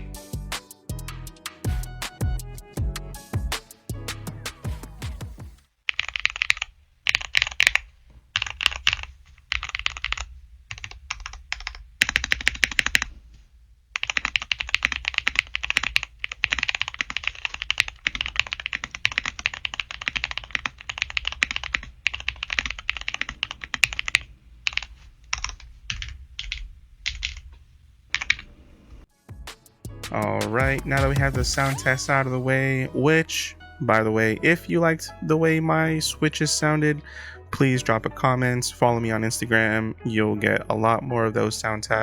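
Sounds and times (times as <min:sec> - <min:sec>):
mechanical keyboard typing: 0:05.9 - 0:29.0.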